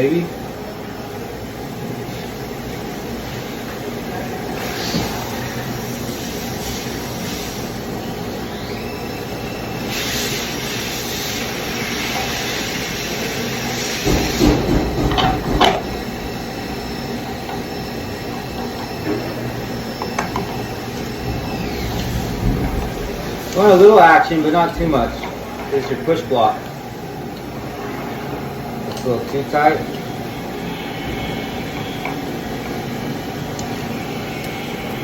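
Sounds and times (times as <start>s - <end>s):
machine hum and hiss: 0.0s - 35.0s
metal parts clunking: 14.2s - 16.3s.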